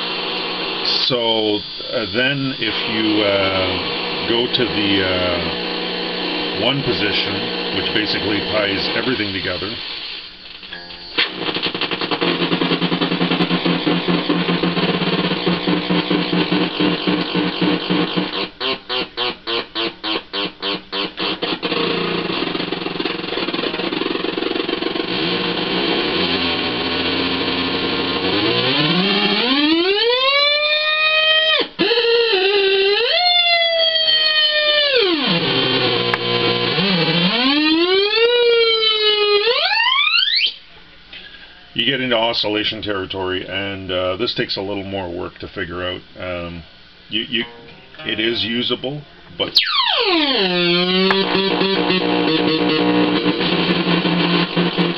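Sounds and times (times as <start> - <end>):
harsh fuzz noise: 0.0 - 39.8, 45.9 - 54.9
rapid sputtering pulses: 11.3 - 18.5
squealing tone sweeping in pitch: 49.5 - 53.4.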